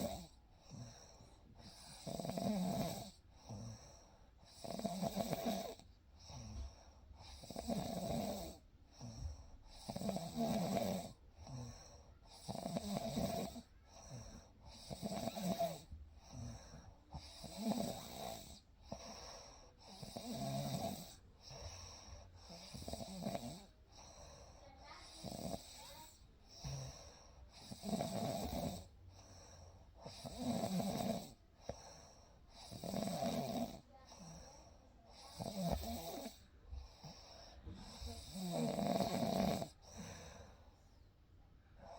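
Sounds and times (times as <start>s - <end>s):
person snoring: 0.0s - 6.6s, 7.2s - 24.2s, 24.9s - 28.9s, 30.0s - 34.4s, 35.1s - 40.5s.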